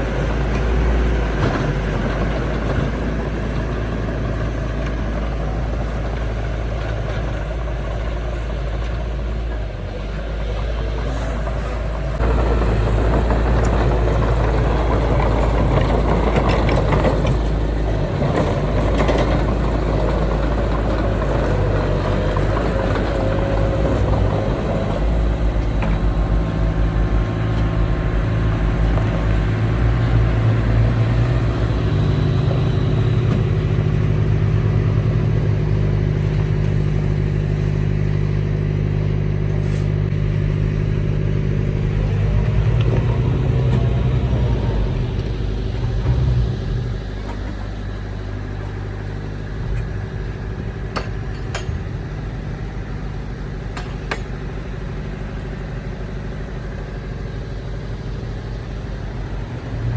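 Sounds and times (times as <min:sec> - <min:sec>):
heavy diesel engine revving: 0:00.0 - 0:59.9.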